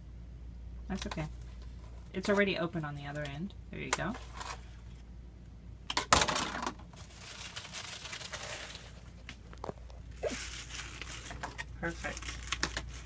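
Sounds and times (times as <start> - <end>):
plastic packaging crinkling: 6.2 - 13.0
leaves rustling: 7.0 - 9.2, 10.2 - 13.0.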